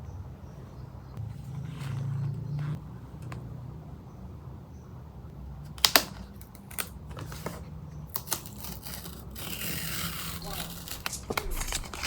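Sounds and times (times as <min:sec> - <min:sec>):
low steady hum: 0:09.8 - 0:12.0.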